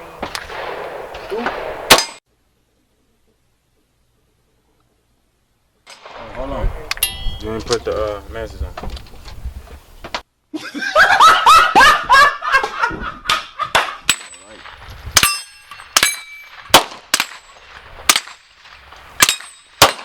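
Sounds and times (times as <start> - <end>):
voice: 6.2 - 8.8, 14.3 - 14.7
metallic ringing: 7.0 - 7.8, 15.2 - 17.5, 19.2 - 19.8
gunshots: 14.1 - 20.0.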